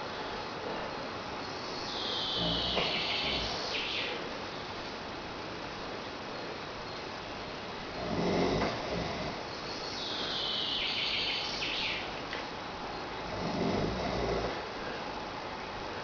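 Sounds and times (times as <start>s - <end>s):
long hissing breath: 1.6s - 3.9s, 8.0s - 10.6s
man snoring: 2.4s - 3.8s, 8.0s - 9.4s, 13.3s - 14.6s.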